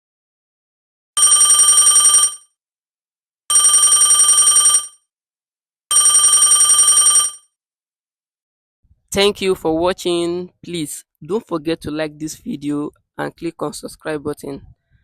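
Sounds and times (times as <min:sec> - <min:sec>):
telephone ringing: 0:01.2 - 0:02.6, 0:03.5 - 0:05.1, 0:05.9 - 0:07.6.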